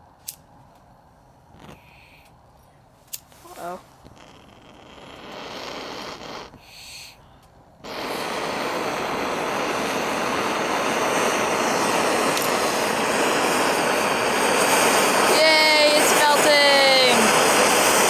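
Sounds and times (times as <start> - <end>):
soft gas hiss: 1.0 - 18.0
torch flame roaring: 4.0 - 6.6, 7.8 - 18.0.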